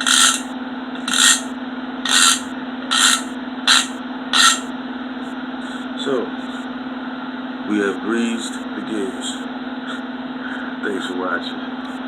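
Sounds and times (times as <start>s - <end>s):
hand ratchet ratcheting: 0.0s - 1.5s, 2.1s - 4.6s.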